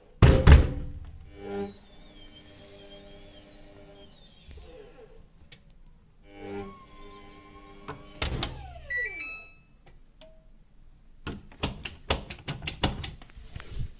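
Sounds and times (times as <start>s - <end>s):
electronic tones and beeps: 8.8s - 9.8s
washing machine clicks and knocks: 11.3s - 13.2s.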